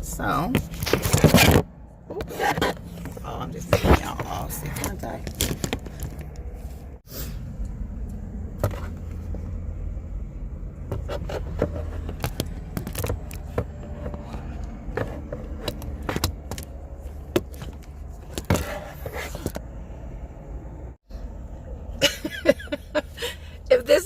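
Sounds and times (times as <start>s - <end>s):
clicks scrapes and rustles of handling: 10.9s - 19.6s.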